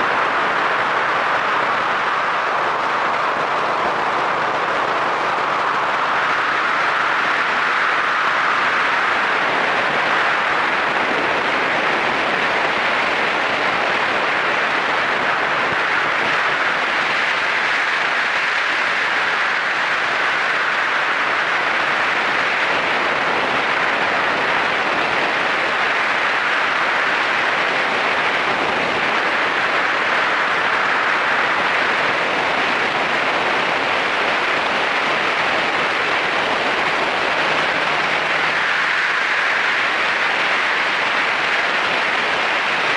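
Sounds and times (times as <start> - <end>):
wind and road rush on motorcycle: 0.0 - 42.9.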